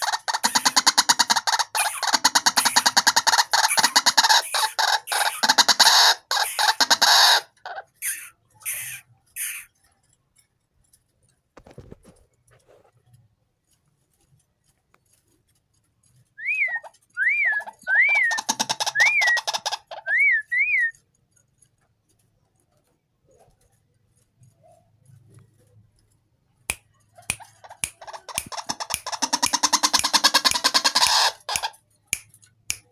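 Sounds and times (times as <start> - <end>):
harsh rapid bird croaking: 0.0 - 9.8, 16.4 - 20.9, 27.2 - 31.9
bird whistled notes: 16.4 - 21.0.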